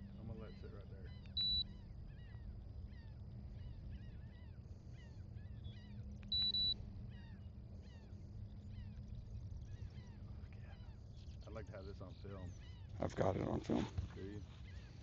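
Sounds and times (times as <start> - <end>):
birds chirping: 0.0 - 15.0
low hum: 0.0 - 15.0
high electronic beeps: 1.4 - 1.6, 6.3 - 6.8.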